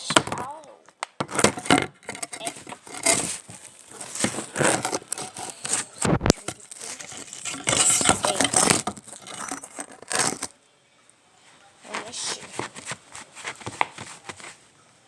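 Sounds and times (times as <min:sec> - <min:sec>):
sticky mixture crackling while stirred: 0:02.2 - 0:10.6, 0:11.8 - 0:14.6.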